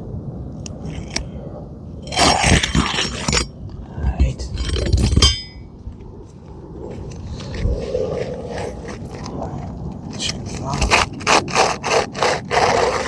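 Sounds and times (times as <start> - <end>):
scraping and metallic clinking: 2.1 - 3.6, 4.4 - 5.7.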